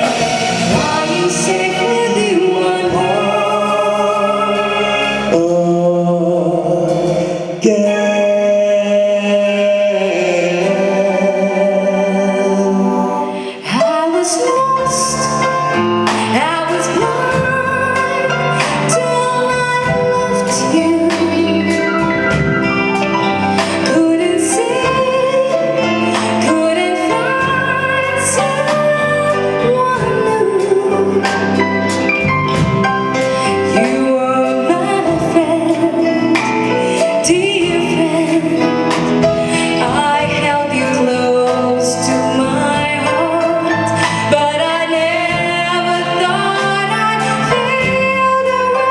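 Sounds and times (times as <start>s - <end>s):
person singing: 0.0s - 15.6s
band backing: 0.0s - 48.9s.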